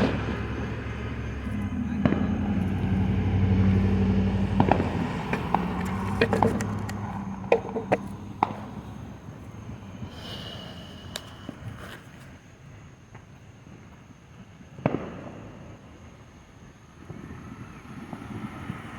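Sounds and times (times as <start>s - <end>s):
firework pops and crackles: 0.0s - 3.0s, 4.4s - 8.9s, 13.2s - 16.4s, 17.0s - 18.9s.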